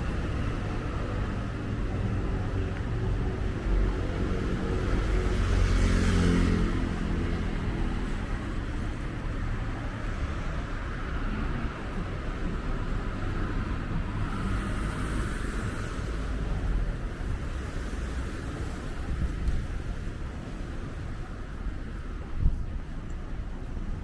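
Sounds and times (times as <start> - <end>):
street traffic: 0.0 - 24.0
wind rumbling on microphone: 7.5 - 24.0.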